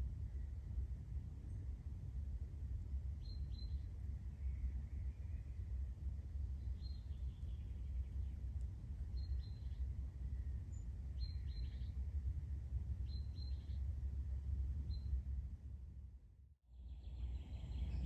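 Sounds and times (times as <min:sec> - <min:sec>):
steady low rumble: 0:00.0 - 0:18.0
bird chirping: 0:10.7 - 0:12.0, 0:13.0 - 0:13.8, 0:16.8 - 0:18.0.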